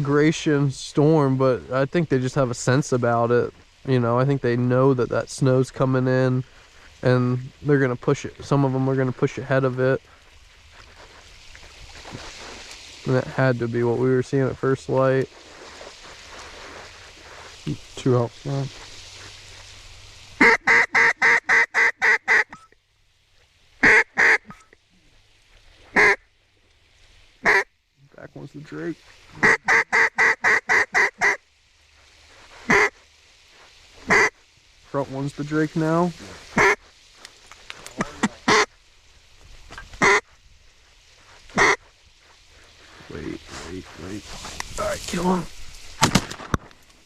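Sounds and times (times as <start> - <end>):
duck call quacks: 20.4 - 22.7, 23.8 - 24.8, 25.9 - 26.2, 27.4 - 27.7, 29.4 - 31.4, 32.7 - 33.0, 34.0 - 34.4, 36.3 - 36.8, 38.0 - 38.8, 40.0 - 40.3, 41.5 - 41.9.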